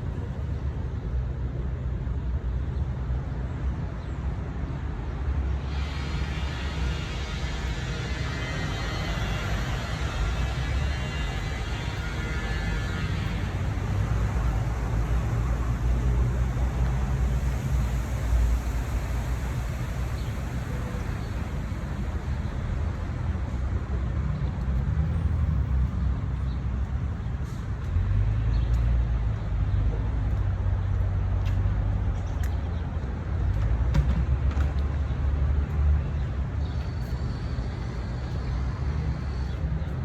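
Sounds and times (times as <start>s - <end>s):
road traffic rumble: 0.0s - 40.0s.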